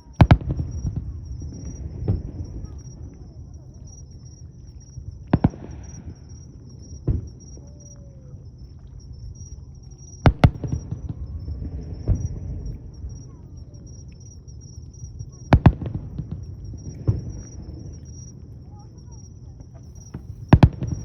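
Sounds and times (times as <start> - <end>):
fireworks shells bursting: 19.7 - 21.0.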